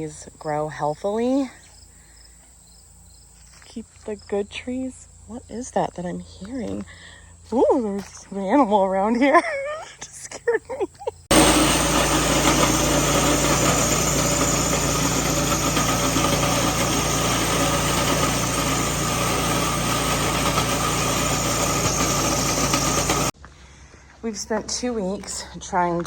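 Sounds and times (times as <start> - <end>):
floor grinder running: 11.3 - 23.4.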